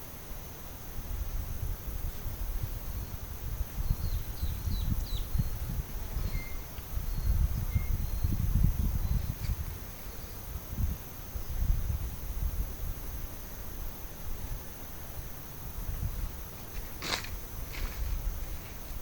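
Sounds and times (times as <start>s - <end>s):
high insect drone: 0.0s - 19.0s
wind buffeting microphone: 1.0s - 19.0s
bird chirping: 3.8s - 8.4s.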